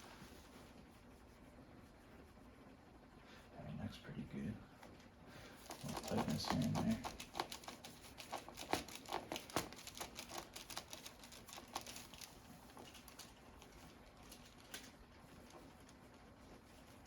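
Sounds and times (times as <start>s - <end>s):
rustling on padded table: 0.0s - 2.6s.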